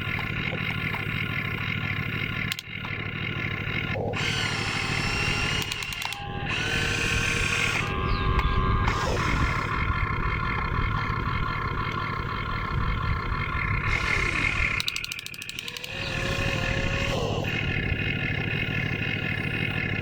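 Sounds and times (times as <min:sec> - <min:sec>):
small motors whining: 0:00.0 - 0:20.0
low rumble: 0:06.4 - 0:14.8.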